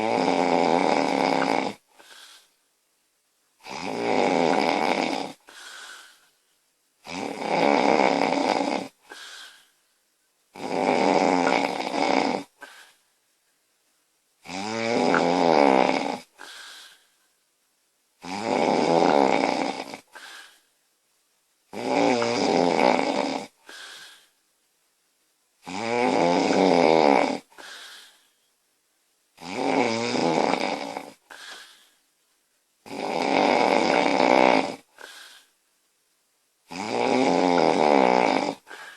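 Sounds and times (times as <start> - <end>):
woman snoring loudly: 0.0 - 2.4, 3.6 - 6.2, 7.0 - 9.6, 10.5 - 12.9, 14.4 - 16.9, 18.2 - 20.5, 21.7 - 24.2, 25.6 - 28.1, 29.4 - 31.7, 32.8 - 35.5, 36.7 - 38.9
quiet breath: 1.4 - 2.7, 5.3 - 6.7, 8.9 - 10.0, 12.4 - 13.2, 16.2 - 17.4, 19.9 - 20.8, 23.5 - 24.4, 27.4 - 28.6, 31.1 - 32.1, 34.8 - 35.6, 38.5 - 38.9.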